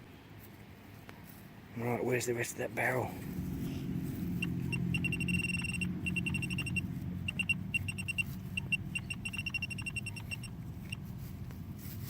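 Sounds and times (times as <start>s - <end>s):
metal detector pinpointer beeping: 4.4s - 11.1s.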